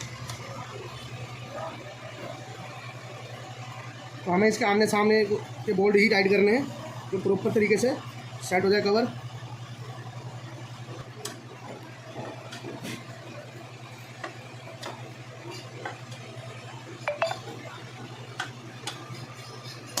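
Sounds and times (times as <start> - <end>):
metal ringing clink: 17.1 - 17.5.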